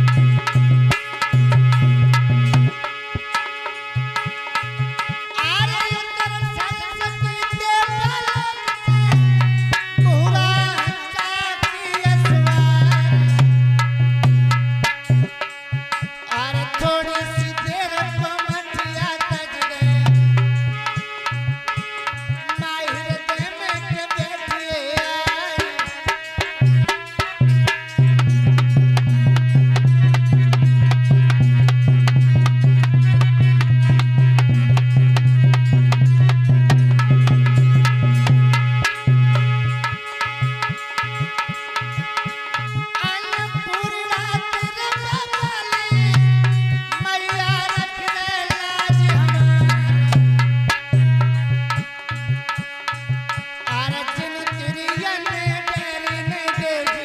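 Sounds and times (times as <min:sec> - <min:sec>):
hand drum fast rhythm: 0:23.4 - 0:43.0, 0:47.4 - 0:51.8.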